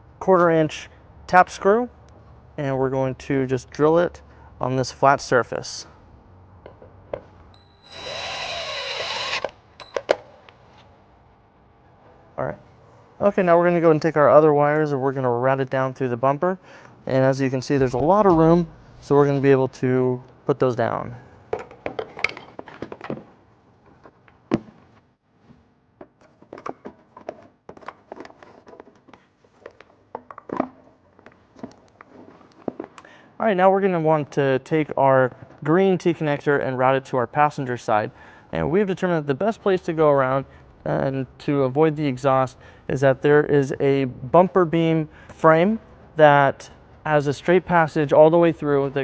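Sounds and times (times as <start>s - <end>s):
power drill driving a screw: 7.6s - 9.9s.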